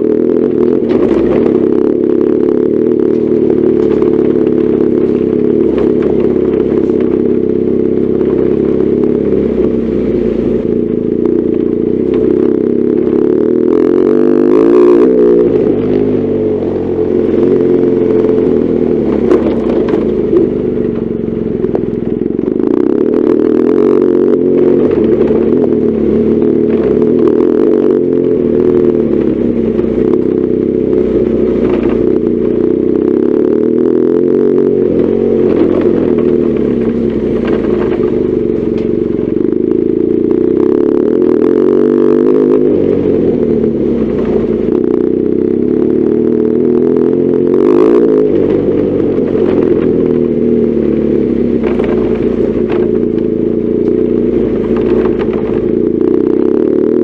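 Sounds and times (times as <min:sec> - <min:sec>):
motorcycle engine running: 0:00.0 - 0:57.0
clatter and sharp knocks: 0:31.4 - 0:32.6, 0:35.5 - 0:39.0, 0:51.6 - 0:55.8.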